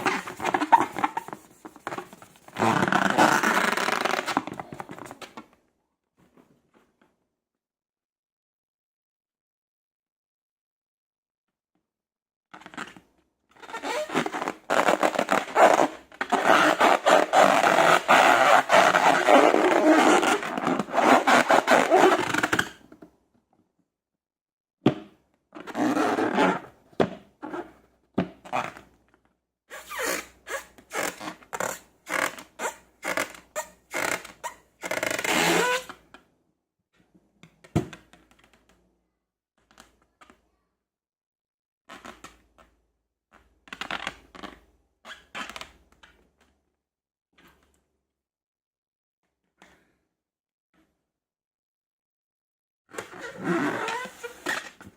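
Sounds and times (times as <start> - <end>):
slime and balloons scraping: 0.0 - 5.2.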